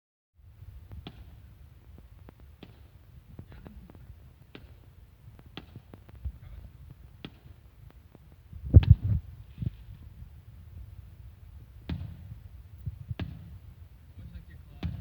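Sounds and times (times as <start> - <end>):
steady low rumble: 0.4 - 15.0
distant fireworks popping: 0.6 - 10.9.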